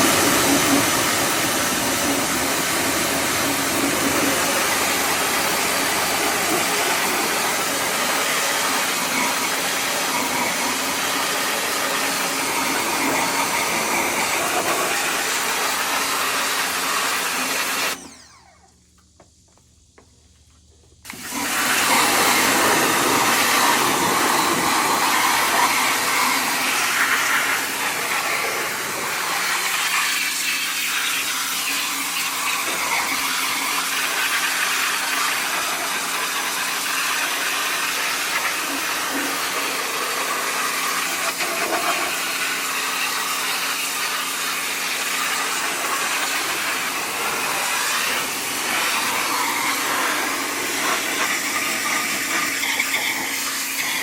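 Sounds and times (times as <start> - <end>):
low motor hum: 17.9 - 21.0
high-pressure spray hissing: 21.2 - 31.9, 36.6 - 54.0.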